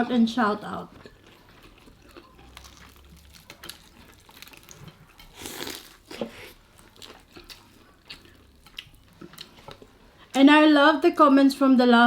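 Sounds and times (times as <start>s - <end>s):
crunching and chewing fried chicken: 0.6s - 10.4s
loud crunch or crinkle: 2.0s - 9.3s.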